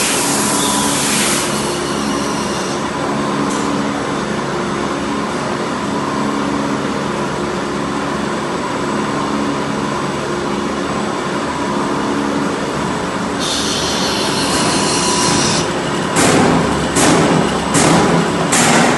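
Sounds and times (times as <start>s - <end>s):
pipe threading machine motor hum: 12.8s - 18.9s.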